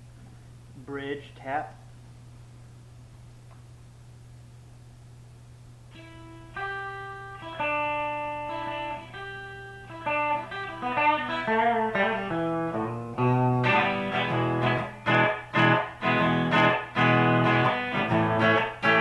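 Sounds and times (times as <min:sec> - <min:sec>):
electric guitar playing: 0:05.9 - 0:19.0.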